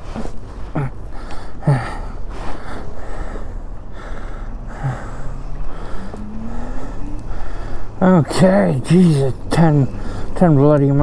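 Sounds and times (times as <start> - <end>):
faint hum: 0.0 - 11.0
person breathing hard with gasps: 0.7 - 8.0
wind rumble: 2.1 - 11.0.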